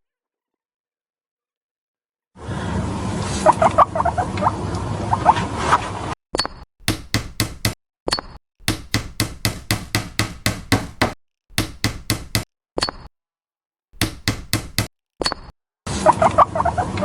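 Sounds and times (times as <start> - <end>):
sharp knocking taps: 6.8 - 7.8, 8.6 - 12.4, 14.0 - 15.4.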